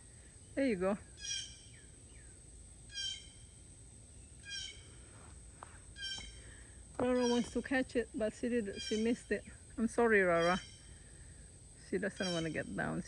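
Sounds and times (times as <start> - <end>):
bird calls: 2.9 - 3.4, 4.3 - 5.0, 6.0 - 7.8, 8.7 - 9.5, 12.1 - 12.8.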